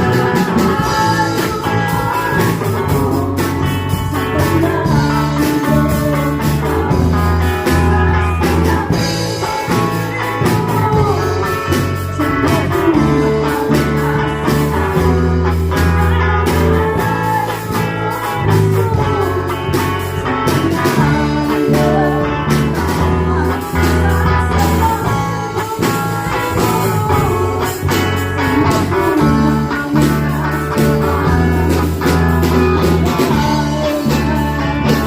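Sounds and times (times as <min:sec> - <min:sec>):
drum kit beat: 0:00.0 - 0:35.0
person singing: 0:00.0 - 0:35.0
worship band music: 0:00.0 - 0:35.0.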